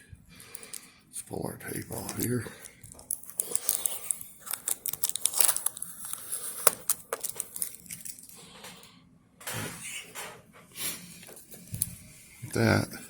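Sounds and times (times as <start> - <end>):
adhesive tape peeling: 3.1 - 8.2.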